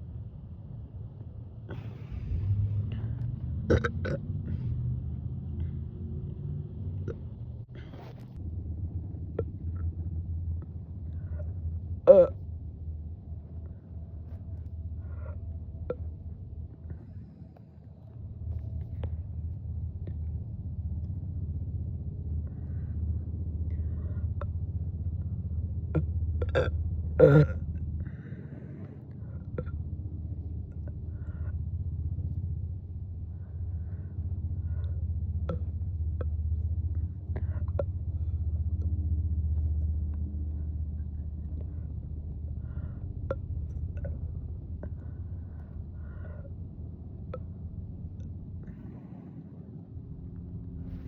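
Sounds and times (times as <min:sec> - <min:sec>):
low car hum: 0:00.0 - 0:51.0
woman belching: 0:03.7 - 0:04.3, 0:12.1 - 0:12.4, 0:26.0 - 0:27.6
woman burping: 0:03.7 - 0:04.3, 0:12.1 - 0:12.4, 0:26.0 - 0:27.6.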